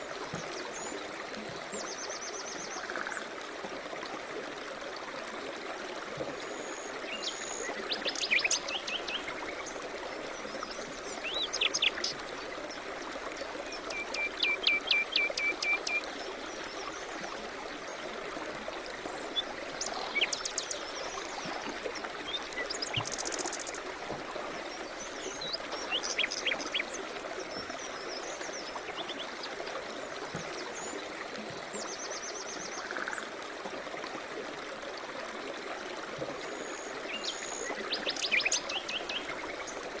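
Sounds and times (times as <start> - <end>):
river flowing: 0.0 - 40.0
songbirds chirping and trilling: 24.4 - 29.4.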